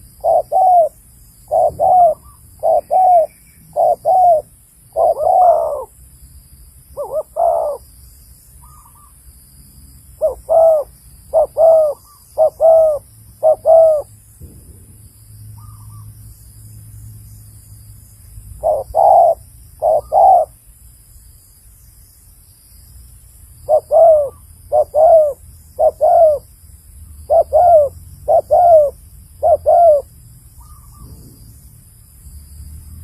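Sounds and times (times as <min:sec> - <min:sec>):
dove cooing: 0:00.0 - 0:06.0, 0:07.0 - 0:07.8, 0:10.2 - 0:14.1, 0:18.6 - 0:20.6, 0:23.7 - 0:26.5, 0:27.3 - 0:31.6.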